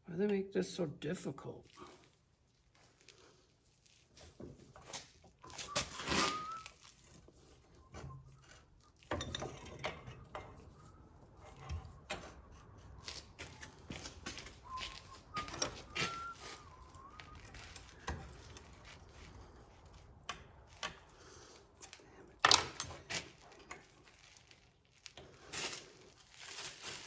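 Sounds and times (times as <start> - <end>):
metal parts clicking and rattling: 5.4 - 12.4.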